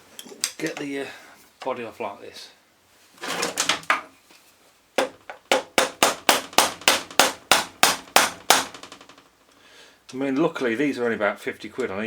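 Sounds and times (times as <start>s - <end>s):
sharp metal knocks: 5.0s - 9.2s.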